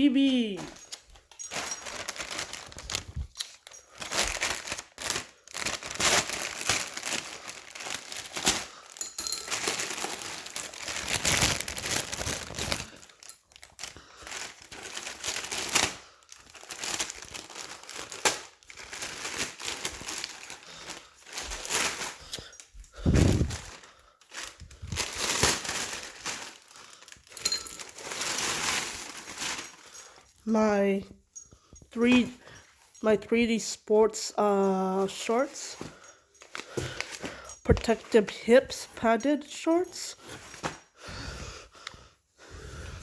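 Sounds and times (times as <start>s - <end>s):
packaging bag crinkling: 0.2s - 30.5s
bag tearing: 1.6s - 22.3s, 23.0s - 29.8s.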